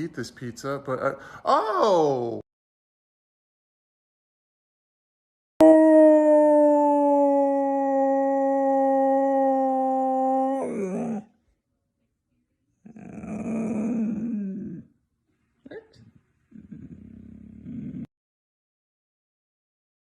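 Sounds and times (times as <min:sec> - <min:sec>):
dog howling: 0:05.6 - 0:11.3, 0:12.9 - 0:14.9.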